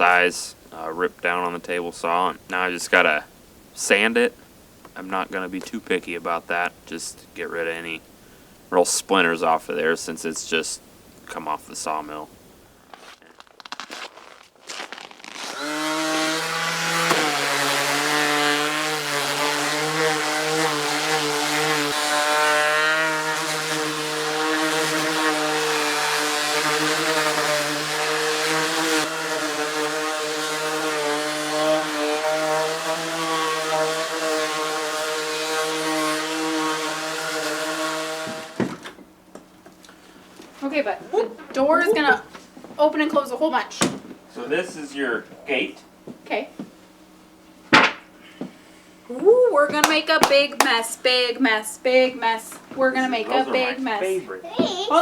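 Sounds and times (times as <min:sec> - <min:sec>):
electric sander running: 0:13.0 - 0:39.0, 0:52.8 - 0:54.9.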